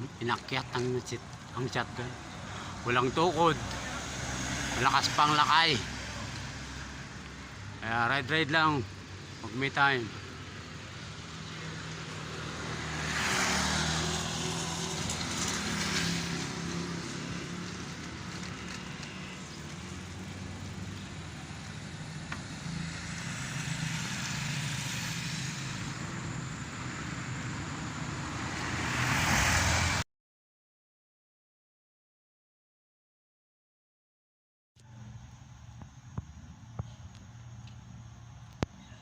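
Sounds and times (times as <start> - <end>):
vehicles passing: 0.0 - 30.0, 34.8 - 39.0
road noise: 0.0 - 30.1, 34.8 - 39.0.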